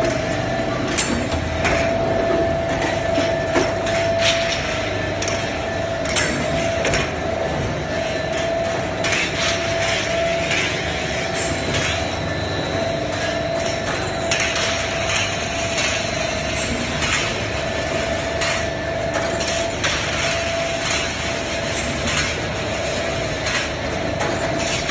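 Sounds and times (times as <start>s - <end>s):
machinery din with steady tone: 0.0s - 24.9s.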